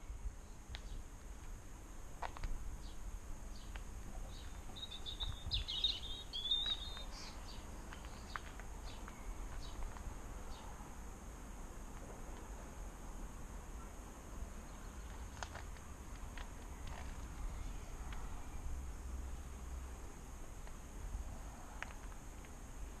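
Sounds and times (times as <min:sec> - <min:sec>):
outdoor background noise: 0:00.0 - 0:23.0
bird chirping: 0:02.8 - 0:09.8
faint ticks: 0:07.9 - 0:10.1.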